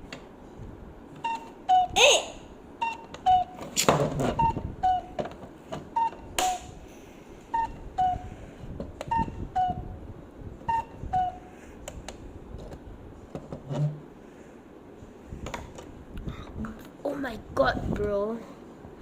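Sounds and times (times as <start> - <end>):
cuckoo clock calling: 1.2 - 3.6, 4.4 - 5.2, 7.5 - 8.3, 10.7 - 11.5.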